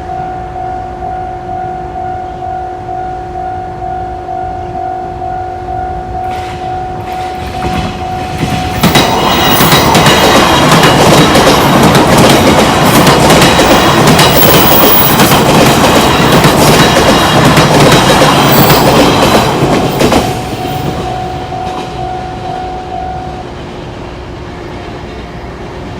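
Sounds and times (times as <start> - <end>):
level crossing warning bell: 0.0 - 23.6
train wheels clattering on rails: 6.3 - 22.2.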